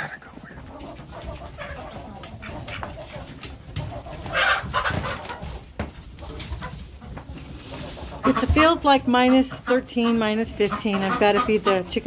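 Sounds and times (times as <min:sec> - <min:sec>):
chicken squawk: 0:00.0 - 0:05.6
chickens clucking: 0:00.0 - 0:12.0.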